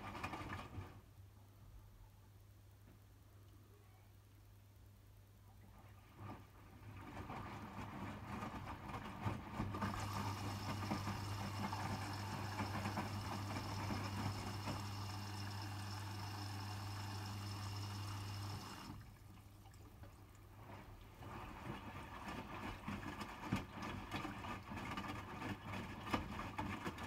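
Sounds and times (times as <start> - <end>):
washing machine water rushing: 6.0 - 27.0
electrical hum: 9.8 - 19.8.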